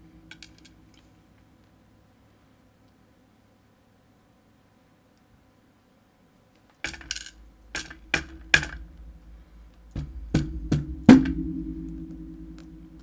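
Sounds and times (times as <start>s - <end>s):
small hammer tapping on metal: 6.9s - 12.0s
low metallic ringing: 8.9s - 13.0s.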